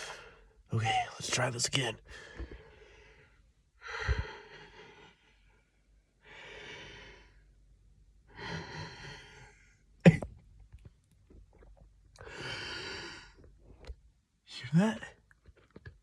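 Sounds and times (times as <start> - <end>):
man breathing heavily: 2.0 - 7.6, 8.3 - 10.0, 12.2 - 13.6
man coughing: 10.0 - 10.4.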